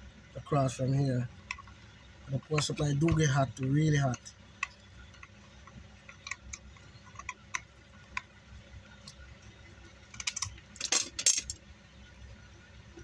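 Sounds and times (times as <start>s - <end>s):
light clicks and taps on metal parts: 1.4s - 8.4s, 9.0s - 11.6s.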